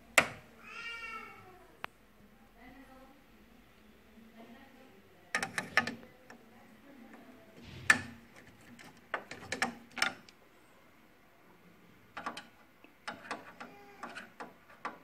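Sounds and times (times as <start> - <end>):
printer parts clicking and knocking: 0.2 - 0.4, 5.3 - 6.4, 7.6 - 10.4, 12.1 - 15.0.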